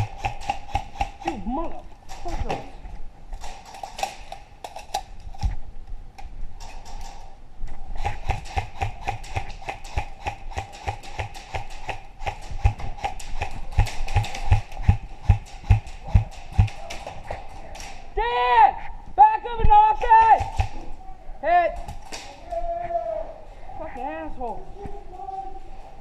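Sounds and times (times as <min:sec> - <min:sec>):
airsoft gun shots: 0:08.0 - 0:17.0, 0:20.2 - 0:20.8.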